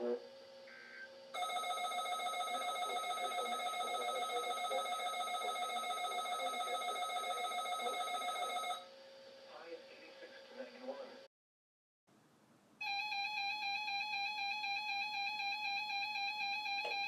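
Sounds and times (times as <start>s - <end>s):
shrill electronic alert tone: 1.4s - 8.8s.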